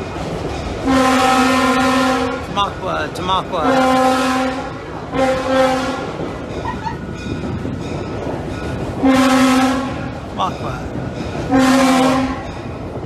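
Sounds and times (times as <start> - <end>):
train running rumble: 0.0 - 13.0
train horn blasts: 0.8 - 2.5, 3.6 - 6.2, 9.0 - 10.2, 11.4 - 12.6.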